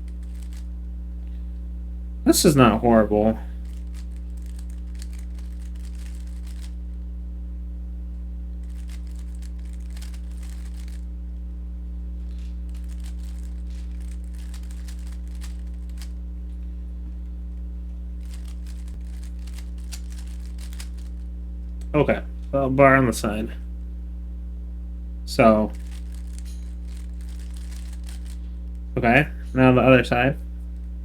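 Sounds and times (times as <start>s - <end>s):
low electrical hum: 0.0s - 31.0s
puzzle cube clicking: 0.2s - 0.6s, 3.6s - 6.8s, 8.6s - 11.0s, 12.8s - 16.1s, 18.2s - 21.2s, 25.7s - 28.4s.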